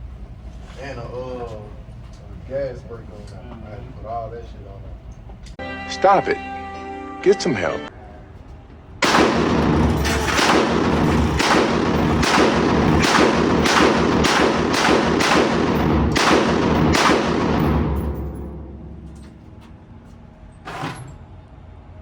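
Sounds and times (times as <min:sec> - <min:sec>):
pistol gunshots echoing: 0:09.0 - 0:19.2.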